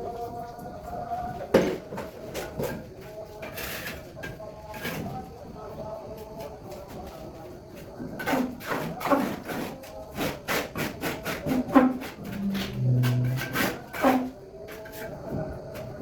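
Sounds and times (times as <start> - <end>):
knocking and scraping: 1.5 - 5.3, 6.1 - 16.0
low hum: 12.3 - 13.4.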